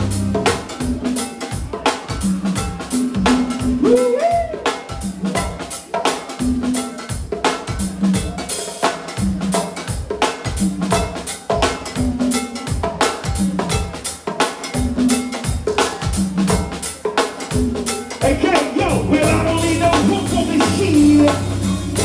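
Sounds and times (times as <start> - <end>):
low bass line: 0.0 - 0.6, 18.9 - 22.0
drum kit beat: 0.0 - 22.0
live band playing groove: 0.0 - 22.0.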